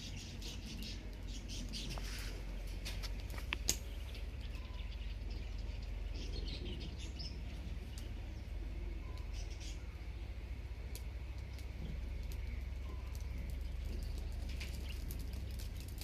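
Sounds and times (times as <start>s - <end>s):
steady low hum: 0.0s - 16.0s
bird chirps: 3.8s - 10.4s, 11.4s - 15.9s.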